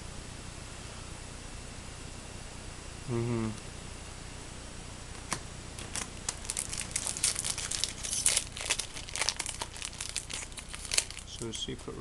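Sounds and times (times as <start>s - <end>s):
foil wrapper crinkling: 5.8s - 11.8s.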